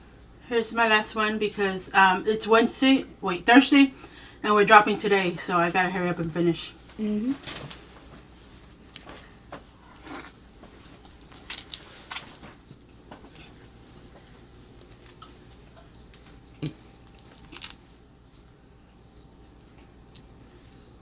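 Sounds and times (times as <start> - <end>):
person eating crunchy food: 9.8 - 14.1, 14.7 - 18.6, 19.6 - 20.8.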